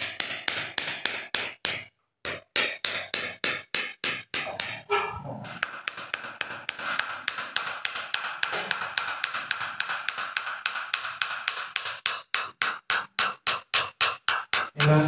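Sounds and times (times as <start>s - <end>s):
light rhythmic tapping: 0.0s - 15.0s.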